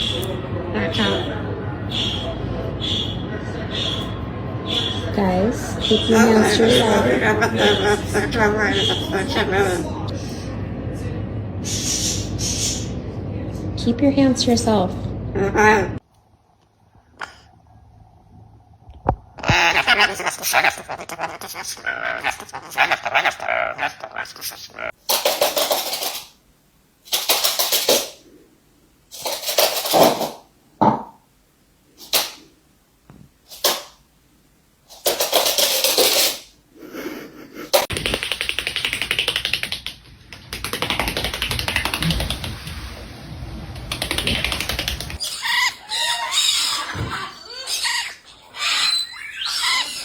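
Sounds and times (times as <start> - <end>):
parrots chirping whistle-like calls: 0.9 - 6.6
parrots squawking and screeching: 1.9 - 9.8, 19.4 - 25.0, 45.1 - 50.0.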